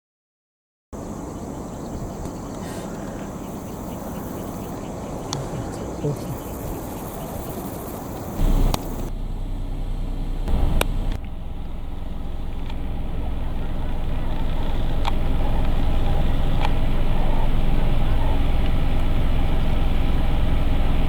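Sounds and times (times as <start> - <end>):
low rumble: 1.1 - 21.0
sharp clicks: 8.1 - 9.1.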